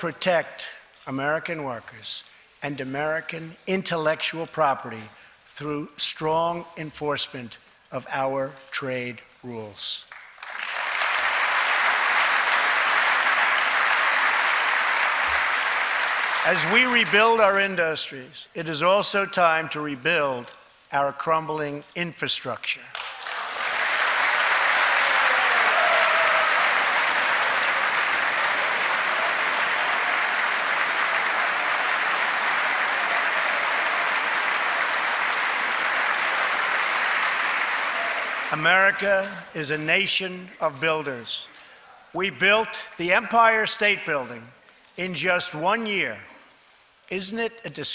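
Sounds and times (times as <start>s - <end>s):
large audience applauding: 10.1s - 17.6s, 22.9s - 39.1s.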